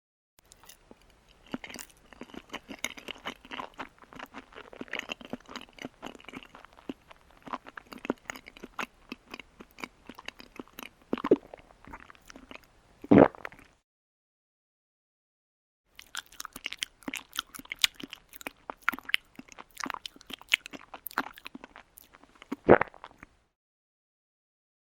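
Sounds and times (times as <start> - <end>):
chewing clicks: 0.4 - 12.7, 16.0 - 23.3.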